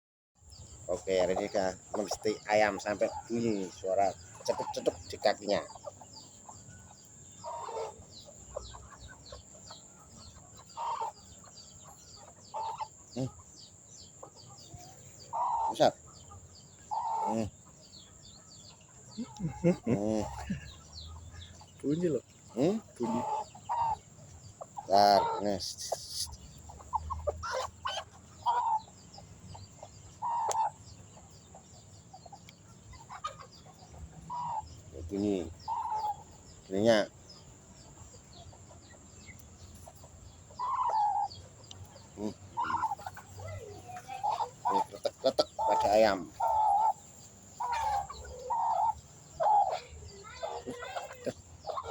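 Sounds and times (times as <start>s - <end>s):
rooster clucking: 14.8s - 16.0s, 16.9s - 17.5s, 19.2s - 21.3s, 22.0s - 24.0s, 24.6s - 28.9s, 39.8s - 51.9s.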